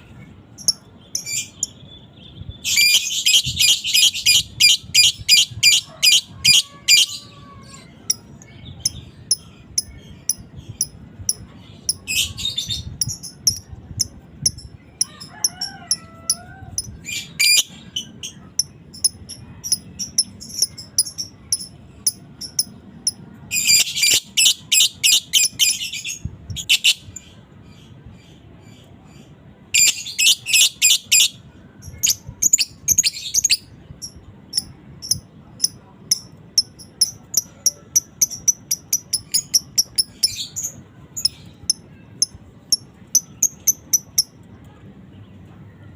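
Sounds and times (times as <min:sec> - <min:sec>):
lovebird rapid chattering: 0:13.0 - 0:14.7, 0:31.9 - 0:40.4.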